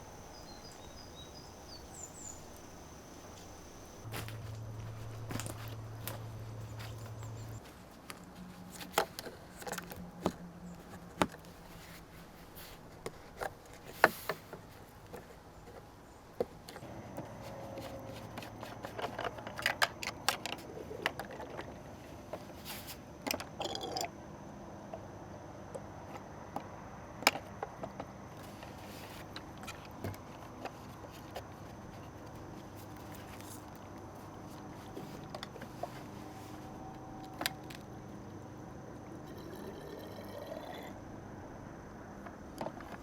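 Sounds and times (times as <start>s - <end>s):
faint low hum: 0.0s - 13.2s.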